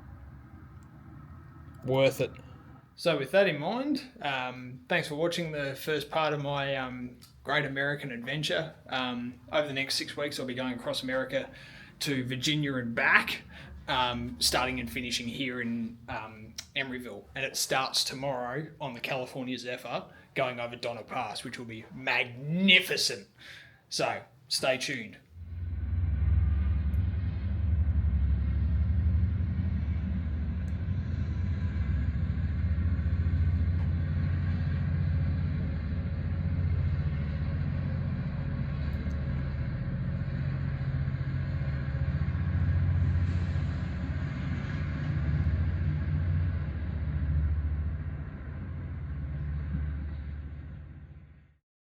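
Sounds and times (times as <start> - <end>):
train rumbling past: 25.4 - 51.5.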